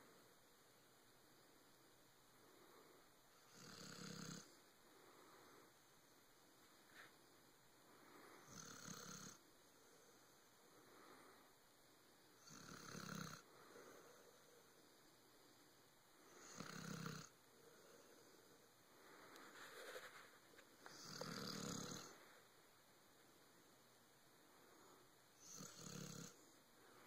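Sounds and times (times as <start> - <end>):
dog snoring faintly: 2.4 - 5.8, 7.9 - 11.4, 12.4 - 14.8, 16.2 - 22.4, 24.5 - 27.0.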